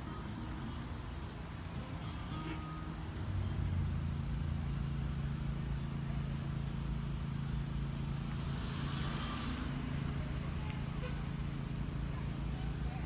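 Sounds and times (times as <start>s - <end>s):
short hiss: 8.3s - 10.1s.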